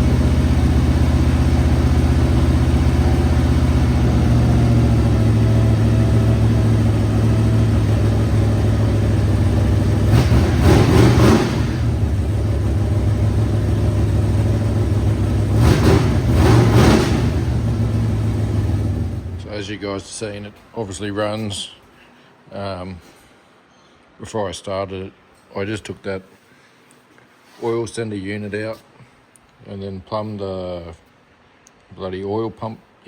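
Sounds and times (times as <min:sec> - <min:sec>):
car engine idling and revving: 0:00.0 - 0:19.5.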